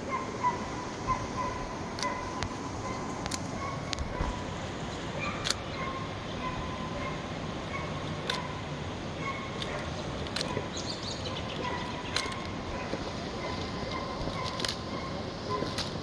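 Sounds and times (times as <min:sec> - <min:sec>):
steady background hiss: 0:00.0 - 0:16.0.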